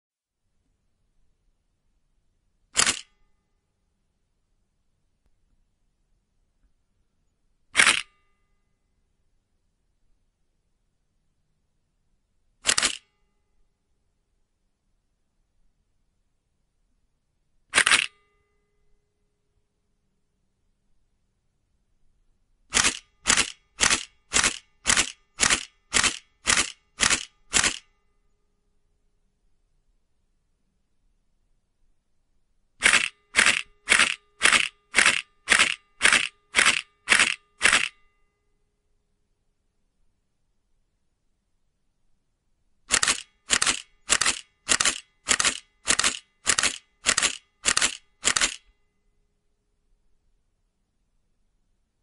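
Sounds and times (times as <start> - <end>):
camera shutter clacks: 2.8 - 3.2, 7.7 - 8.2, 12.6 - 13.1, 17.7 - 18.2, 22.7 - 27.9, 32.8 - 38.0, 42.9 - 48.8.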